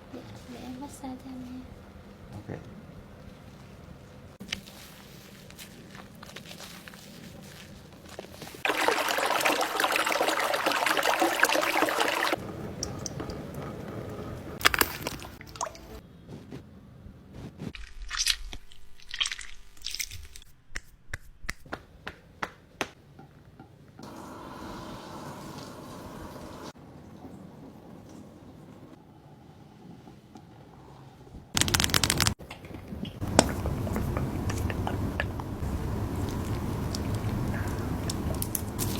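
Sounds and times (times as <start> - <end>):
hands rubbing oiled skin: 4.4 - 8.6, 31.6 - 32.4.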